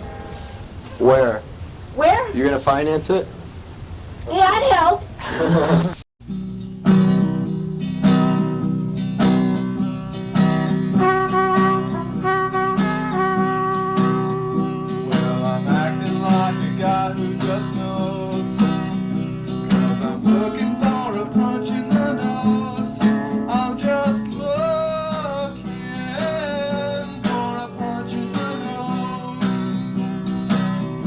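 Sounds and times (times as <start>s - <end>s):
guitar background music: 6.2s - 31.0s.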